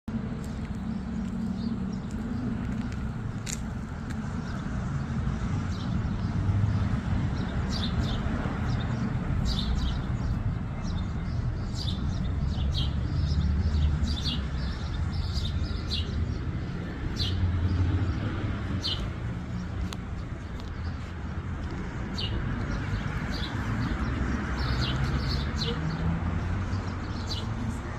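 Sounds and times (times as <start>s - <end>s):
steady low rumble: 0.1s - 6.2s
small birds chirping: 0.2s - 27.9s.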